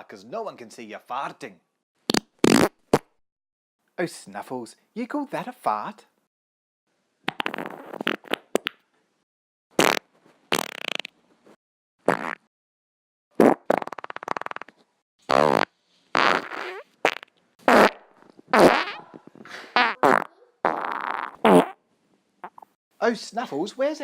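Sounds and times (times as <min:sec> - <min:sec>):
cartoon fart sound effects: 0:02.1 - 0:03.1, 0:07.3 - 0:08.8, 0:09.8 - 0:11.1, 0:12.0 - 0:12.5, 0:13.3 - 0:21.8, 0:22.4 - 0:22.8.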